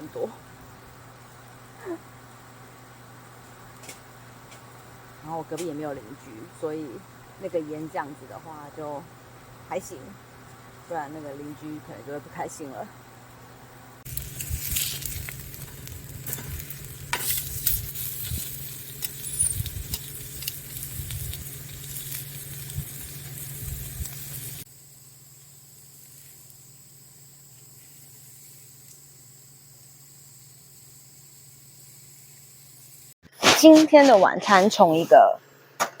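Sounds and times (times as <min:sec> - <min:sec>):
wood fire crackling and popping: 0:14.0 - 0:24.7.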